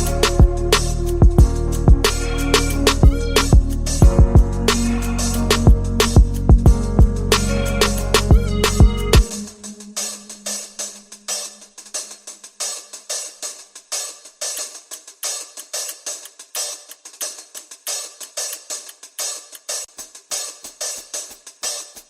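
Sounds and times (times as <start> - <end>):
low kick drum: 0.0 - 2.1, 3.0 - 4.8, 5.5 - 7.4, 8.2 - 9.4
drum-led beat with hi-hats: 0.0 - 22.0.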